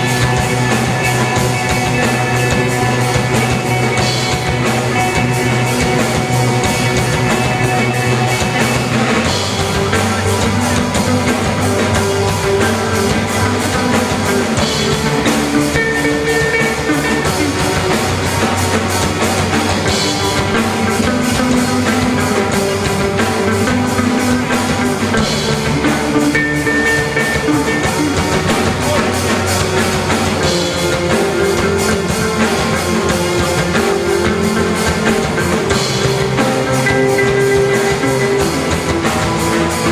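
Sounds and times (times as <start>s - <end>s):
rock band playing: 0.0s - 39.9s.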